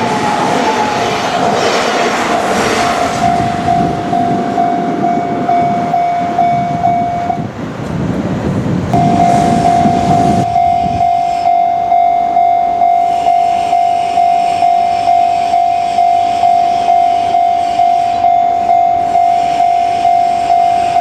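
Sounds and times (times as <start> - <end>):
train rumble and wheel clatter: 0.0 - 21.0
level crossing bell ringing: 3.2 - 7.4, 9.0 - 21.0.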